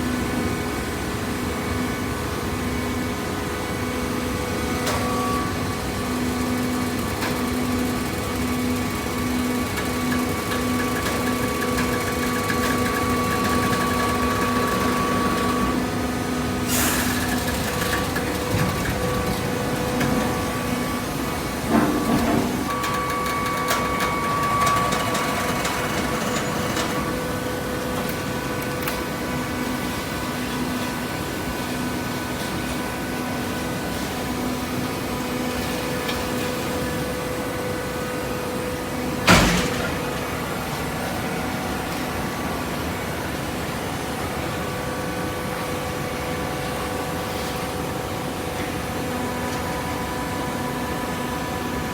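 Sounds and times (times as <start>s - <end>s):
loud metal clank: 39.3s - 40.3s.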